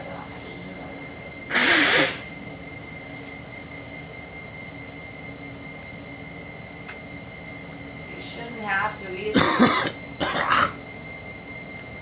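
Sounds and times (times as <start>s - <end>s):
background hum with high whine: 0.0s - 12.0s
man coughing: 9.4s - 10.8s.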